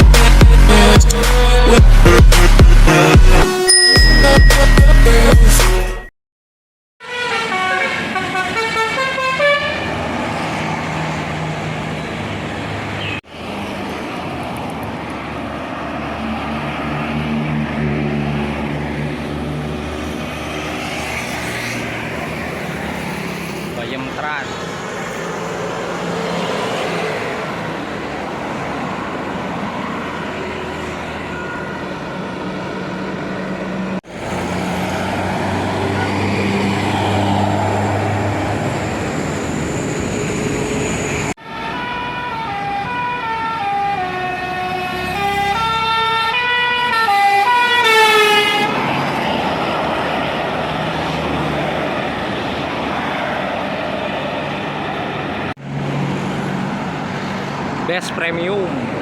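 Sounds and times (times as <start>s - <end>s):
bus engines and road noise: 0.0s - 6.1s, 7.0s - 59.0s
bus musical horn melody: 7.0s - 10.1s, 41.5s - 48.9s.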